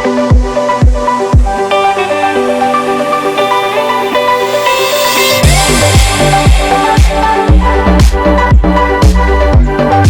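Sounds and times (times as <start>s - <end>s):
synth notes: 0.0s - 10.0s
deep kick drum: 0.3s - 1.6s, 5.4s - 9.8s.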